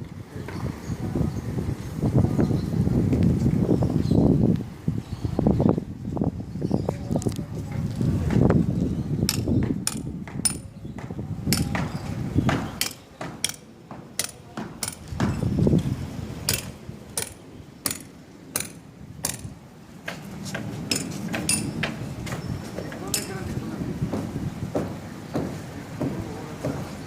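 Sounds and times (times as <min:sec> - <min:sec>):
hammer knocks: 0:09.3 - 0:15.5, 0:16.5 - 0:19.5, 0:24.1 - 0:26.8.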